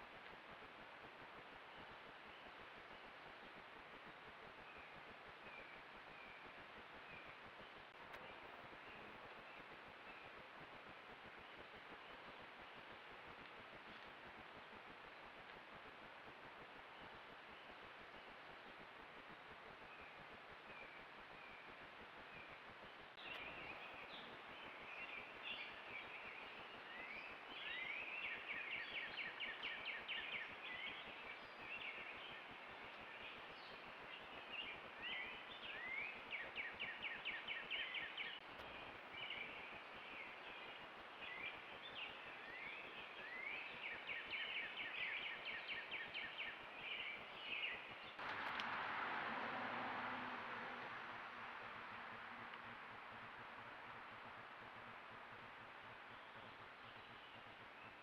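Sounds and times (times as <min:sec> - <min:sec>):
steady outdoor hiss: 0:00.0 - 0:58.0
songbird singing trill: 0:04.7 - 0:07.4, 0:19.9 - 0:48.3.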